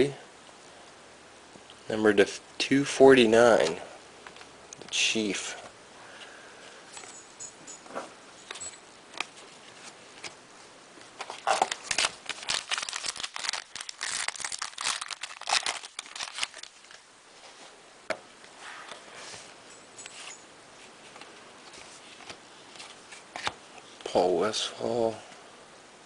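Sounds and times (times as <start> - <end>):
wrapper tearing and crinkling: 11.3 - 17.0.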